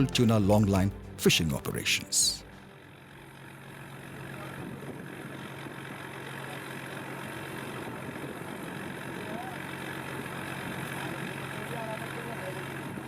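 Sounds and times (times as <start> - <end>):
boat engine droning: 0.0 - 13.0.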